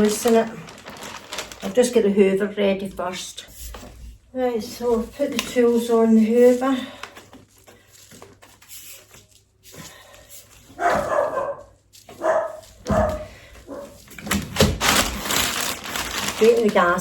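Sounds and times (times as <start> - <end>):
dog barking: 10.7 - 14.0.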